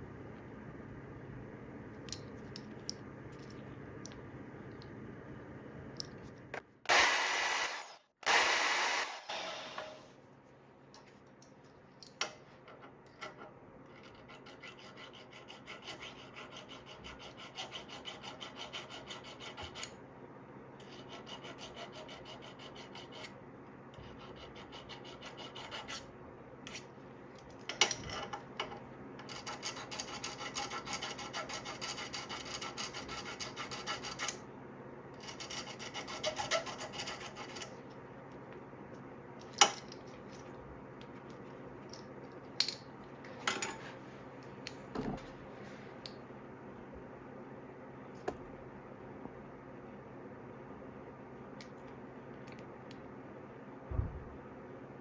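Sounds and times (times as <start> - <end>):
hand file rasping: 14.1 - 19.9, 20.9 - 23.3, 24.0 - 26.1, 29.4 - 34.4, 35.2 - 37.7.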